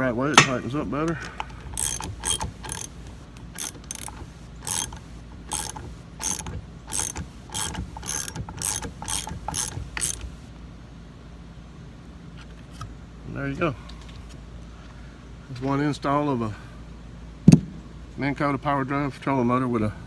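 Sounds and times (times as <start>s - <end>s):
ratchet wrench clicking: 0.0s - 10.4s.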